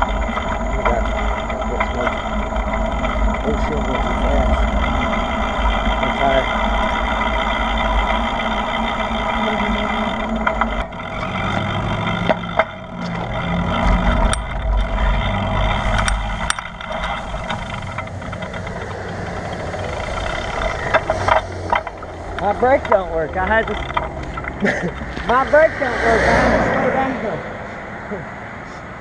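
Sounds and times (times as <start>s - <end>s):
steady multi-tone whine: 0.0s - 29.0s
wind buffeting microphone: 12.8s - 27.6s.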